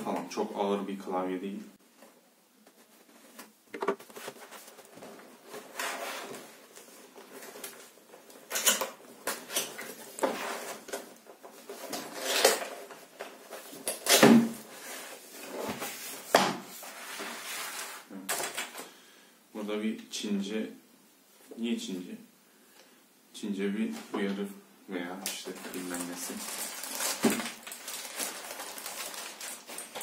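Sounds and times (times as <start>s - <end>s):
packaging rustling and scraping: 2.7s - 18.1s, 25.4s - 30.0s.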